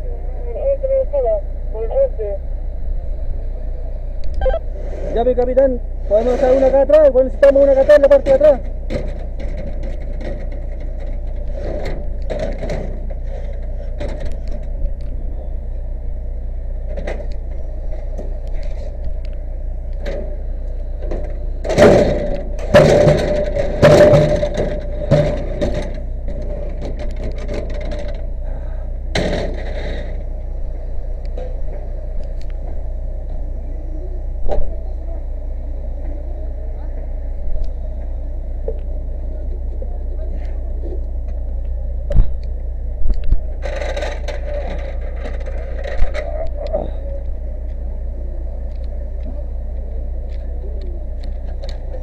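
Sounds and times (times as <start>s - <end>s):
fire engine motor running: 0.0s - 52.0s
loud clattering impacts: 5.5s - 14.9s, 20.0s - 30.3s, 43.4s - 47.0s
wood and metal knocks and scrapes: 7.8s - 14.4s, 21.1s - 28.2s.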